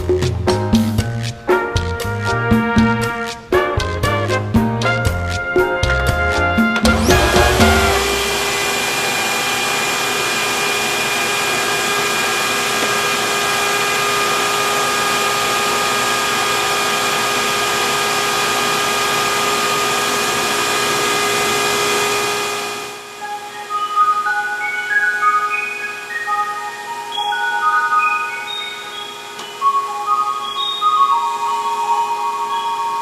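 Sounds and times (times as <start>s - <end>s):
vacuum cleaner running: 6.8s - 23.6s, 28.2s - 33.0s.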